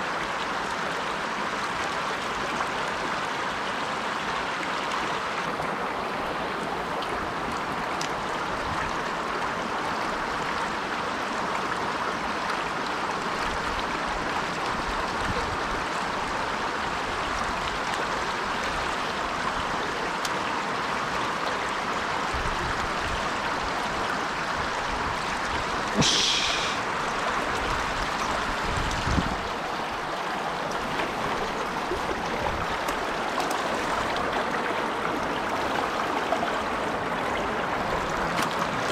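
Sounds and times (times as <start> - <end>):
stream rushing over rocks: 0.0 - 38.9
sharp hissy sound: 26.0 - 26.8.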